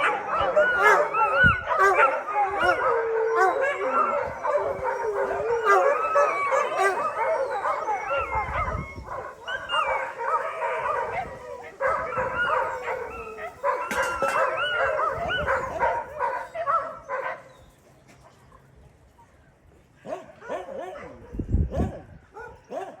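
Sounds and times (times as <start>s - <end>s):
dogs barking: 0.0s - 17.6s, 20.0s - 23.0s
dogs howling in chorus: 0.0s - 17.8s.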